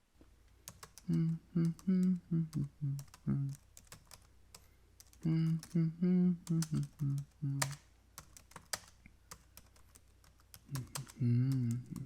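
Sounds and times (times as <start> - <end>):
typing on computer keyboard: 0.6 - 4.3, 5.0 - 5.8, 6.4 - 12.0
man humming low notes: 1.0 - 3.6, 5.2 - 7.8, 10.7 - 12.0.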